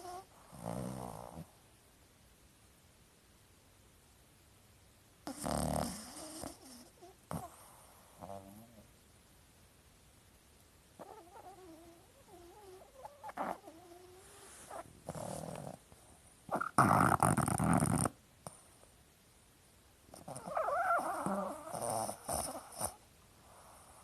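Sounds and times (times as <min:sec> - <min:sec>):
dog snoring: 0:00.0 - 0:01.5, 0:05.2 - 0:08.9, 0:11.0 - 0:18.8, 0:20.1 - 0:24.0.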